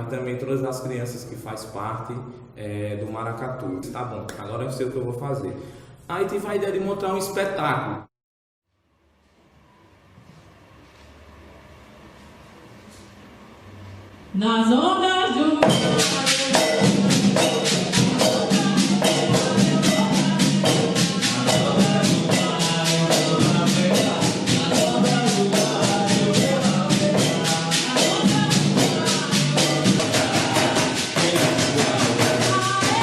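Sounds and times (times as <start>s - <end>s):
fast even percussion strokes: 15.6s - 33.0s.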